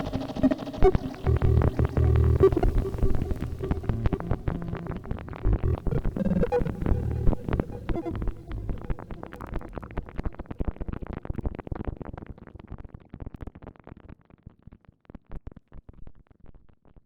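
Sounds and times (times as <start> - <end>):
low synthesizer rumble: 0.0 - 10.6
crackling synthesizer clicks: 0.0 - 11.0.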